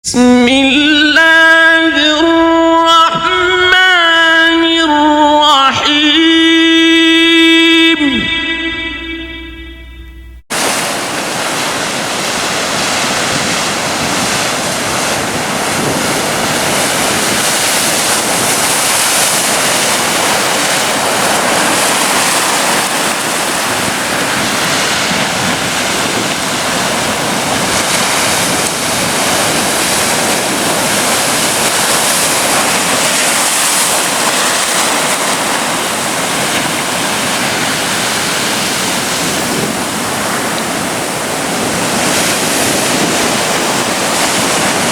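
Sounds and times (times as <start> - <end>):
waves breaking on beach: 10.5 - 44.9.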